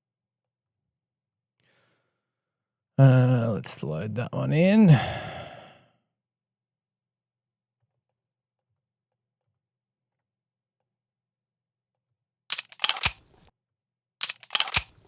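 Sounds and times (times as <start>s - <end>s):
gunshots: 12.5s - 13.2s, 14.2s - 15.0s.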